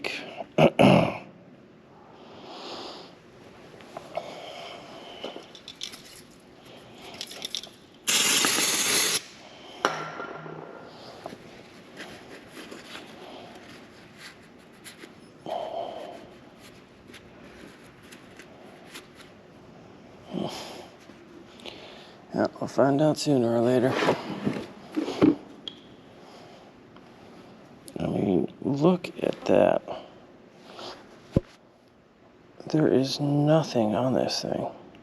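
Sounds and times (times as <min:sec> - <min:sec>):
tools scraping and clicking metal: 0:05.3 - 0:06.4, 0:07.0 - 0:07.8
aerosol spray hiss: 0:08.1 - 0:09.3.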